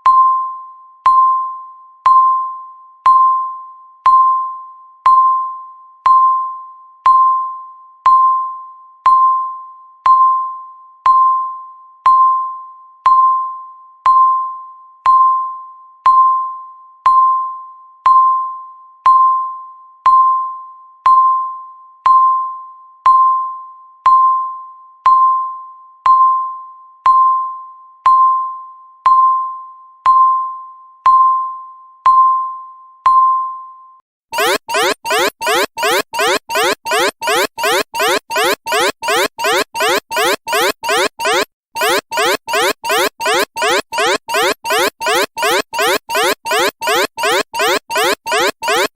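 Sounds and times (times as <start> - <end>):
alarm of sweeping tones: 34.4 - 48.9
countdown timer beeps: 34.4 - 48.9.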